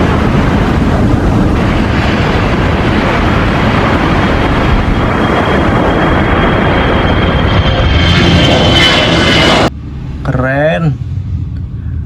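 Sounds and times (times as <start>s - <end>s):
jet engine roar: 0.0s - 12.0s.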